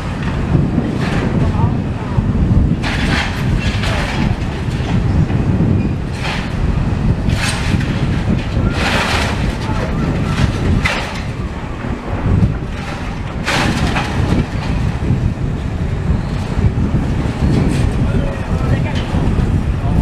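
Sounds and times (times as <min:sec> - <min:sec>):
debris crashing and scraping: 0:00.0 - 0:19.6
demolition machinery rumbling: 0:00.0 - 0:20.0.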